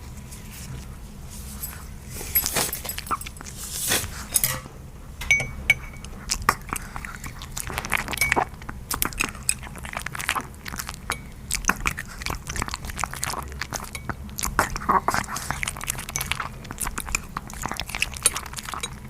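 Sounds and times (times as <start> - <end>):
dog chewing: 0.7 - 4.3, 5.5 - 19.0
teeth clinking against dish: 4.4 - 19.0.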